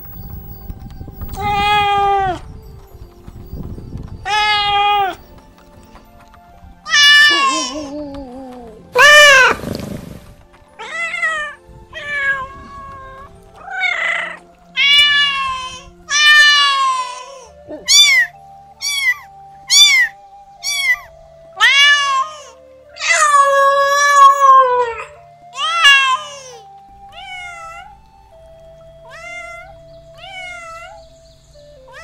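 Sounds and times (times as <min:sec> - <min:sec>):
cats meowing: 0:01.3 - 0:02.4, 0:04.2 - 0:05.2, 0:06.9 - 0:09.6, 0:10.8 - 0:28.4, 0:29.0 - 0:32.0.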